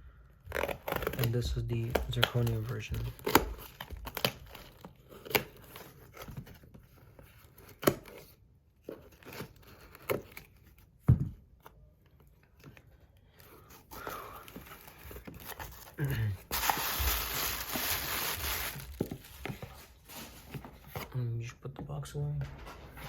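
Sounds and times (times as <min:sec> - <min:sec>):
packaging rustling: 0:00.5 - 0:10.9, 0:12.3 - 0:21.1.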